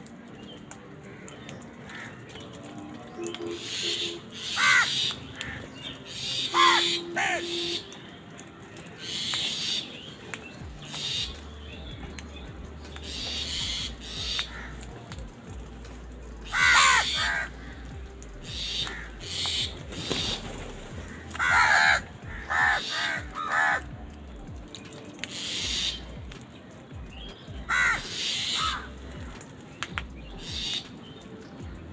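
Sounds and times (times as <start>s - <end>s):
crows cawing: 1.0s - 2.6s, 3.4s - 8.0s, 13.1s - 15.3s, 16.4s - 24.2s, 25.3s - 26.3s, 27.6s - 29.4s, 30.4s - 30.8s.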